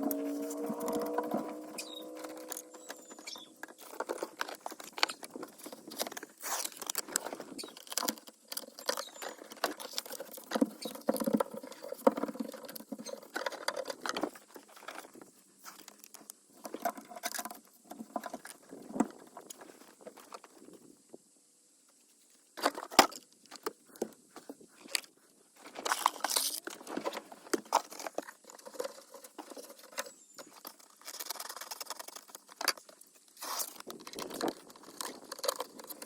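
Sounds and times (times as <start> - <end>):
foil sheets crinkling and scraping: 0.1 - 16.2, 25.6 - 36.0.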